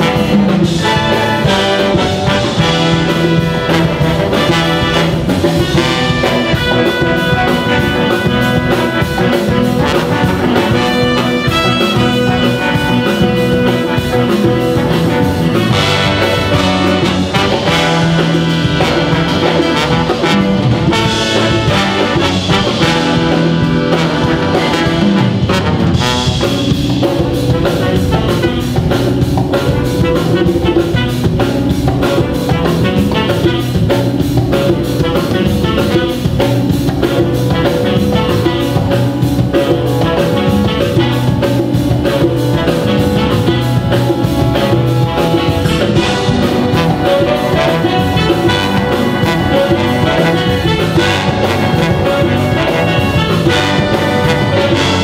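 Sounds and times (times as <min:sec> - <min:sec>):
brass section melody: 0:00.0 - 0:55.0
drum kit and rhythm section: 0:00.0 - 0:55.0.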